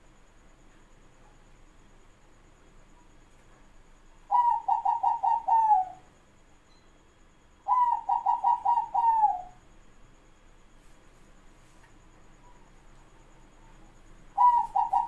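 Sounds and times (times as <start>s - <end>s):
dove cooing: 4.3s - 6.1s, 7.7s - 9.6s, 14.3s - 15.0s.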